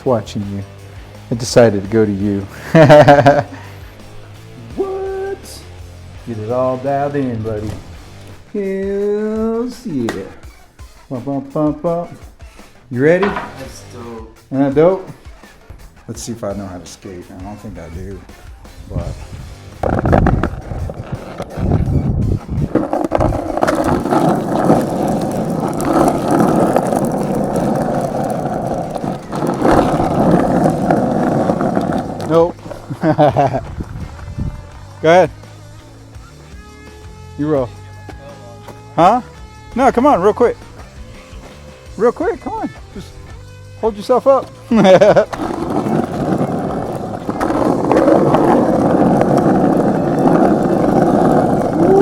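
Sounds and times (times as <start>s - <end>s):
skateboard wheels rolling: 1.4s - 9.0s, 12.2s - 14.2s, 16.6s - 37.2s, 44.2s - 52.0s.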